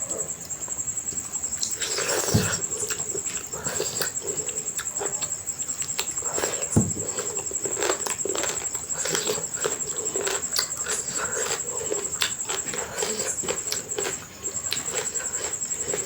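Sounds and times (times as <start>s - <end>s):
wet chewing and lip-smacking: 1.5s - 16.0s
low thud: 6.8s - 7.1s.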